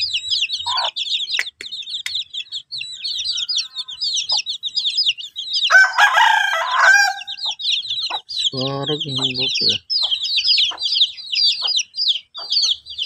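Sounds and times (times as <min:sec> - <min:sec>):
chicks peeping: 0:00.0 - 0:13.0
rooster crowing: 0:03.2 - 0:04.1, 0:05.6 - 0:07.5.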